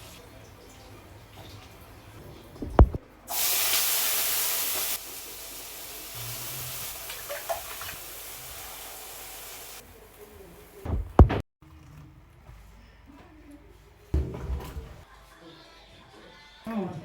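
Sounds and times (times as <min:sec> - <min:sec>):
sharp knock: 0:02.6 - 0:03.0, 0:10.9 - 0:11.4
food sizzling in frying pan: 0:03.3 - 0:10.2.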